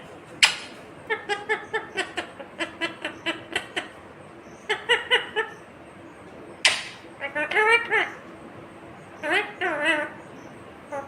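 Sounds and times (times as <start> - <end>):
parakeet calling: 0.3 - 11.0
sharp click: 6.6 - 7.0.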